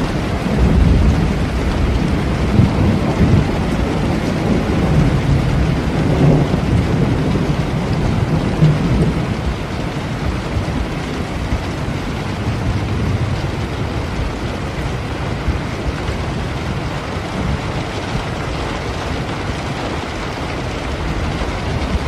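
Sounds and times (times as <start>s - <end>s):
steady rain falling: 0.0s - 22.0s.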